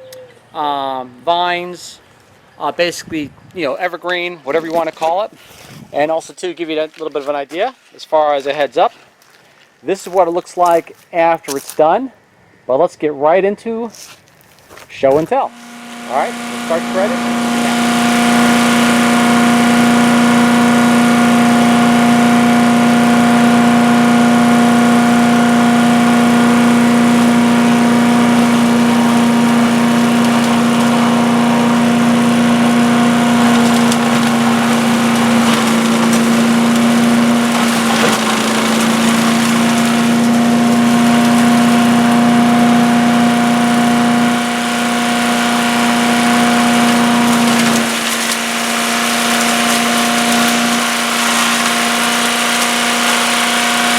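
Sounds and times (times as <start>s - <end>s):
grinding: 15.1s - 53.9s
wood chipper engine running: 15.3s - 53.9s.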